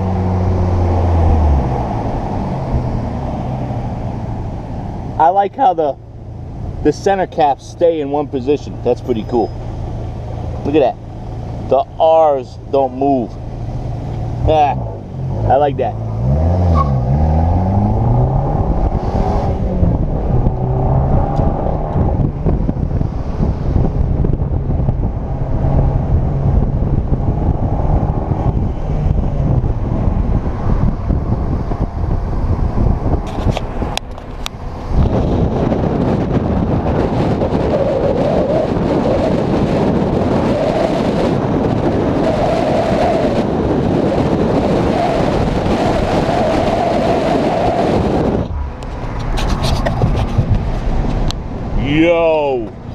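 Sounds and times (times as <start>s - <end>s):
car engine accelerating: 0.0s - 5.3s, 13.2s - 52.9s
wind buffeting microphone: 13.3s - 52.9s.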